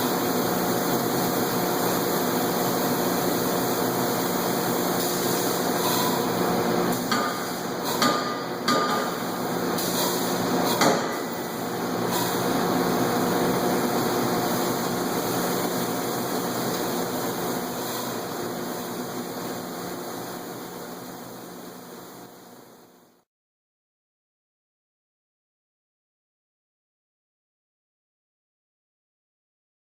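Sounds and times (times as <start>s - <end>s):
machinery humming: 0.0s - 22.9s.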